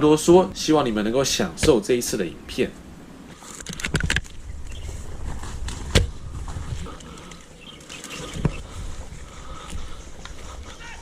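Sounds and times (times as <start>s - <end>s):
sharp clicks and knocks: 3.6s - 4.4s
steady low rumble: 4.2s - 10.8s.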